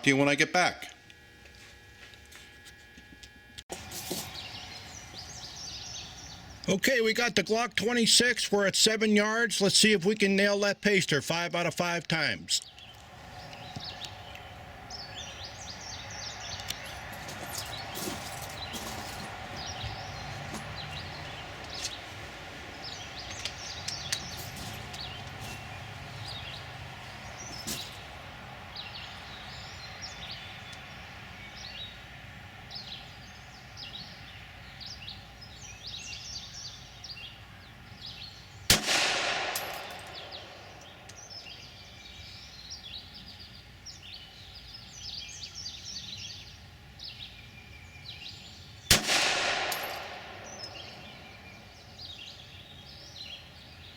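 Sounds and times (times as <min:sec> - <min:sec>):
birds chirping: 0:03.7 - 0:53.9
pistol shots with echo: 0:38.7 - 0:41.1, 0:48.9 - 0:51.4.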